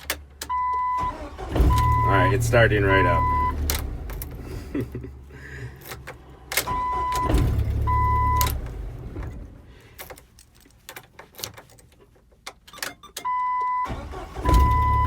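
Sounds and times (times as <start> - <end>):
car engine running: 1.0 - 9.8, 13.9 - 15.0.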